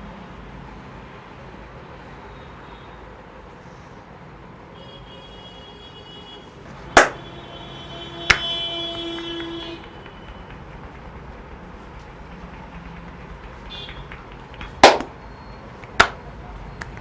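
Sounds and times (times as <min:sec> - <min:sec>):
hand slaps: 0:07.0 - 0:07.2, 0:08.3 - 0:09.5, 0:13.8 - 0:15.2, 0:15.9 - 0:16.2, 0:16.8 - 0:17.0.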